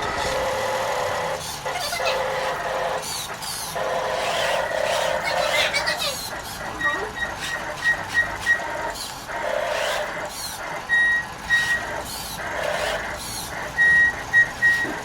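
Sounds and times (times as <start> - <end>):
high reversing beeps: 13.8 - 15.0.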